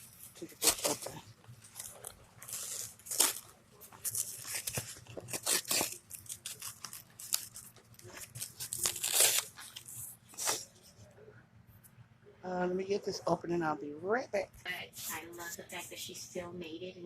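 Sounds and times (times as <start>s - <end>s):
packaging tearing and crinkling: 0.0s - 10.6s.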